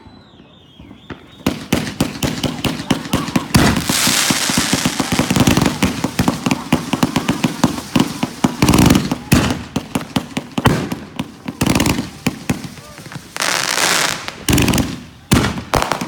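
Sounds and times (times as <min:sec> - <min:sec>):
fireworks cracking and popping: 0:00.8 - 0:16.0
fireworks hissing rush: 0:01.3 - 0:16.0.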